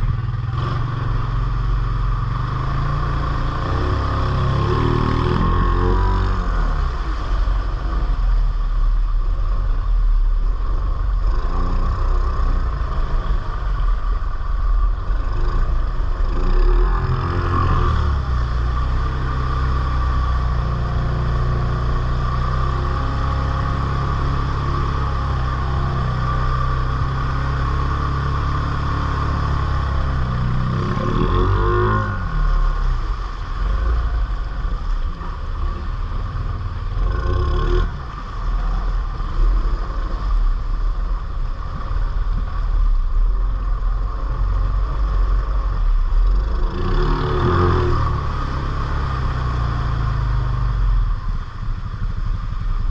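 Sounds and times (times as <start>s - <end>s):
atv engine revving: 0.0s - 8.1s, 15.0s - 40.4s, 44.0s - 52.1s.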